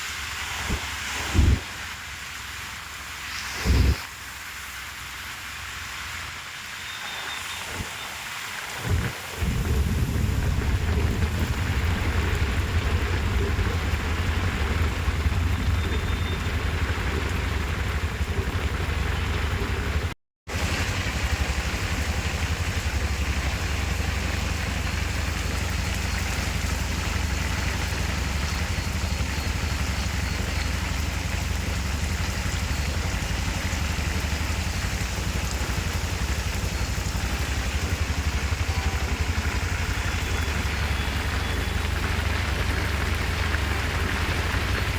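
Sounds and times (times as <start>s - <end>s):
heavy rain falling: 0.0s - 44.9s
low rumble: 0.5s - 2.1s, 8.9s - 20.2s.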